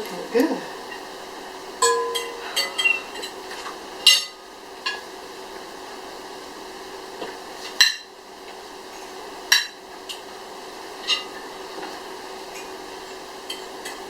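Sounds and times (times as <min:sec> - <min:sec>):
faint steady hum: 0:00.0 - 0:07.2
cutlery clinking on plates: 0:01.8 - 0:05.0.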